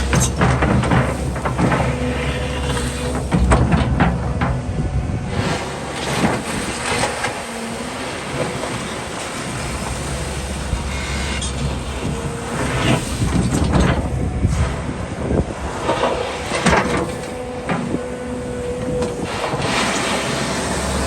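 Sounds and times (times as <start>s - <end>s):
metallic clanks and knocks: 0.0s - 4.9s
excavator diesel engine: 0.0s - 21.0s.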